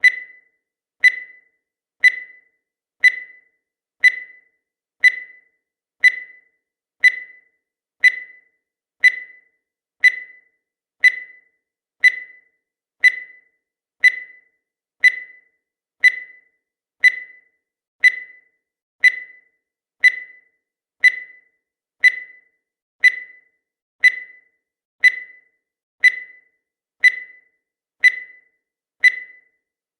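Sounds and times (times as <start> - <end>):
high-pitched electronic beeps: 0.0 - 15.5, 26.1 - 29.5.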